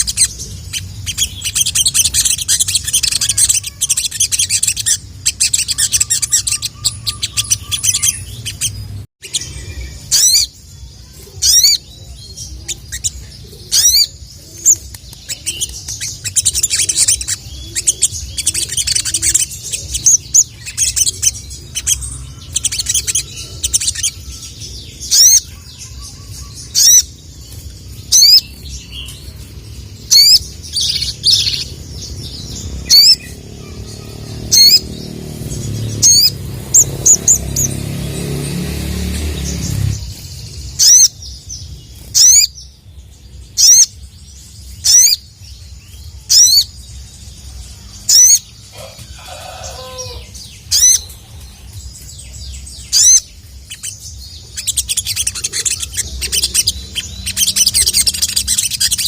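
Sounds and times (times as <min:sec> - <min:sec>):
bird twittering fast: 0:30.1 - 0:41.2, 0:41.8 - 0:42.6, 0:44.8 - 0:45.2, 0:52.8 - 0:59.0.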